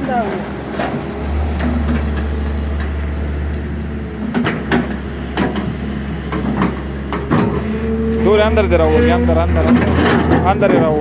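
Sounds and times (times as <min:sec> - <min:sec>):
excavator diesel engine running: 0:00.0 - 0:11.0
sharp metallic knocks: 0:04.2 - 0:11.0.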